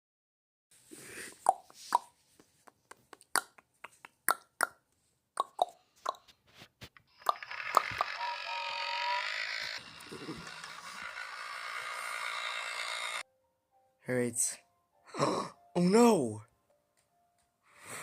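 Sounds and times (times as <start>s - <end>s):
sharp clicks and pops: 5.4s - 8.2s
whirring hum with held tone: 7.3s - 13.2s.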